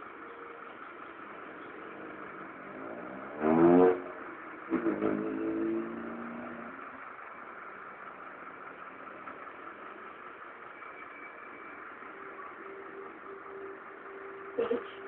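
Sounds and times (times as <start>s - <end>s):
car engine revving: 0.0s - 15.0s
low background hum: 6.0s - 15.0s.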